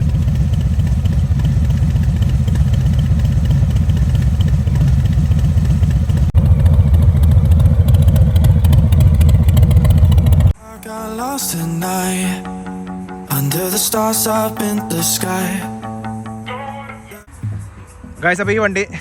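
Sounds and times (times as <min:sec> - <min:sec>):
motorcycle engine rumbling: 0:00.0 - 0:10.6.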